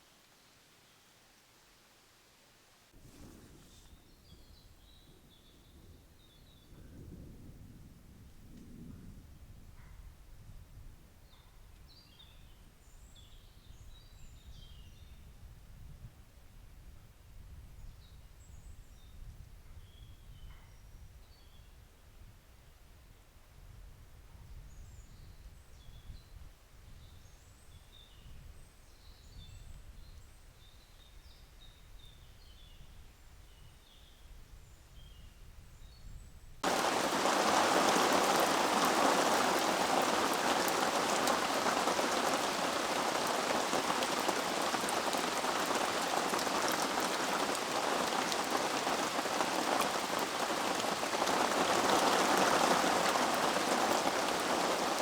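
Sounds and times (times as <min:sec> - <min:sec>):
loud rainfall: 0:36.6 - 0:55.0.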